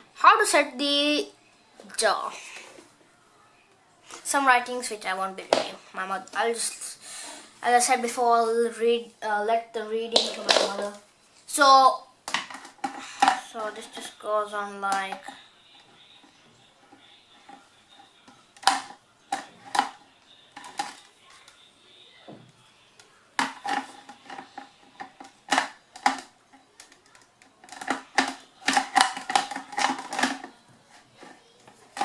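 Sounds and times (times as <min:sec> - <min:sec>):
mixer grinder parts clicking: 0:23.4 - 0:30.5.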